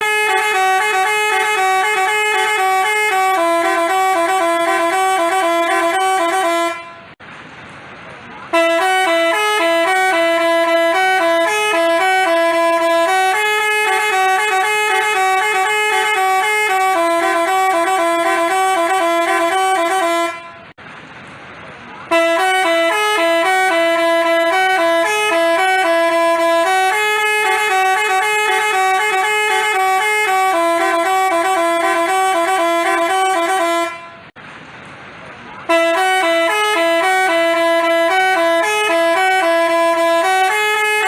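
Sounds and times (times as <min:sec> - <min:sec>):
bus horn playing a tune: 0:00.0 - 0:07.2, 0:08.5 - 0:20.8, 0:22.0 - 0:34.4, 0:35.6 - 0:41.0.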